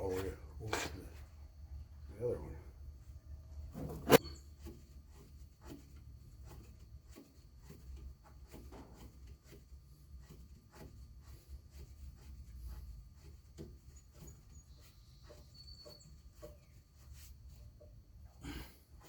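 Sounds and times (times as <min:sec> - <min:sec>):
ticks and scrapes on metal parts: 0:03.8 - 0:18.0.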